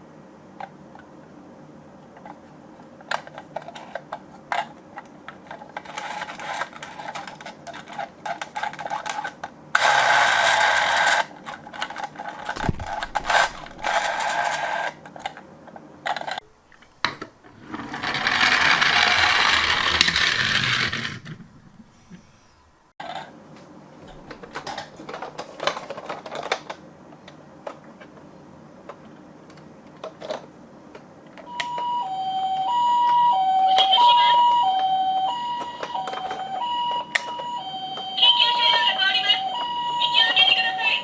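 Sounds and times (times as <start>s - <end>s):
small plastic clicks and clatter: 3.0s - 9.5s, 24.3s - 28.2s
loud whirring: 12.6s - 14.3s, 17.6s - 22.7s.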